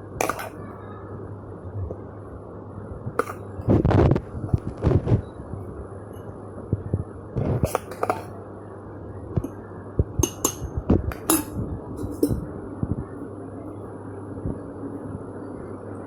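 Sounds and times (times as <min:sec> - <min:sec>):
utensils clinking on glass dishes: 0:10.2 - 0:12.5.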